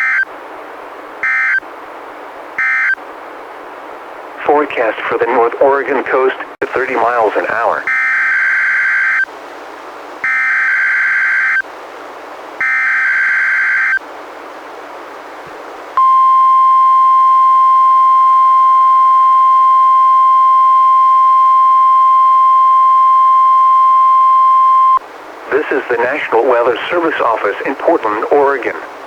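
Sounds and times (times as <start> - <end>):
steady alarm tone: 1.2 - 1.6, 2.6 - 3.0, 10.2 - 11.6, 12.6 - 14.0
radio hiss: 4.4 - 7.9, 24.8 - 29.0.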